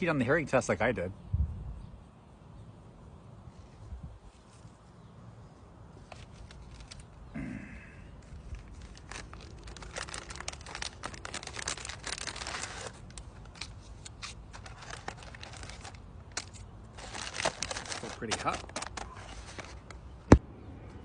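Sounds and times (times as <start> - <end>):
plastic packaging crinkling: 6.0 - 7.2, 8.2 - 20.1.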